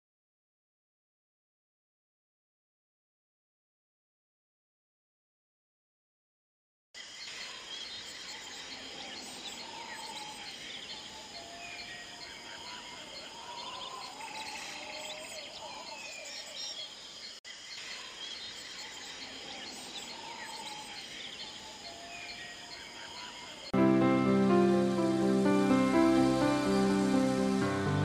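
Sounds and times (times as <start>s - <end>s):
insect drone: 7.0s - 28.0s.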